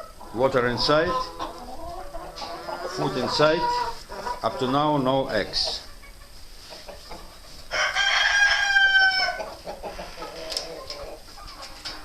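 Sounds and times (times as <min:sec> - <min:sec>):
hen clucking: 0:00.0 - 0:12.0
rooster crowing: 0:07.7 - 0:09.5.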